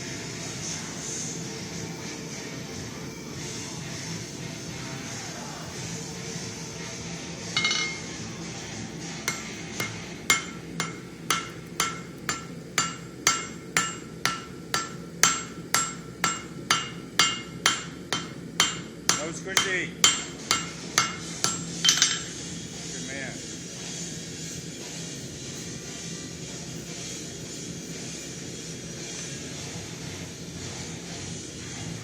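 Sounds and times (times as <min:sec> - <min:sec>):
hammer striking hot steel on anvil: 0:07.6 - 0:08.2, 0:09.2 - 0:22.5.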